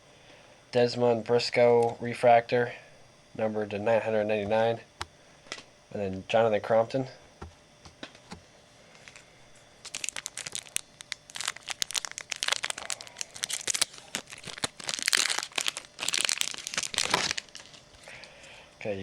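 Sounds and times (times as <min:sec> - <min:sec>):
foil wrapper tearing and crinkling: 0:09.8 - 0:18.0.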